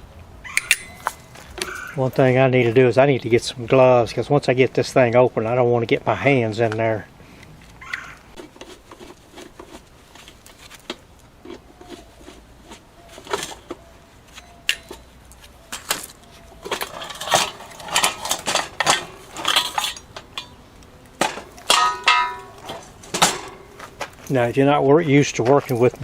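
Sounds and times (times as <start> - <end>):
small metal objects clinking: 0.6 - 1.9, 15.7 - 20.6.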